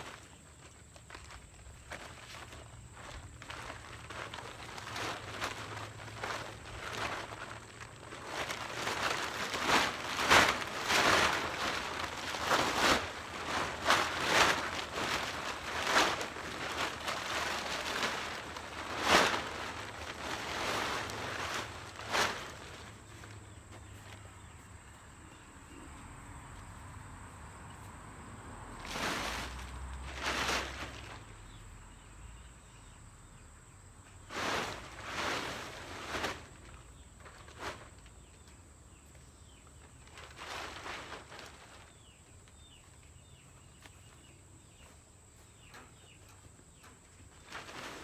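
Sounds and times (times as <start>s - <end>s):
rustling swishes: 0.0s - 24.6s, 28.7s - 31.6s, 34.2s - 38.0s, 40.0s - 42.7s
footsteps in grass: 0.0s - 25.8s.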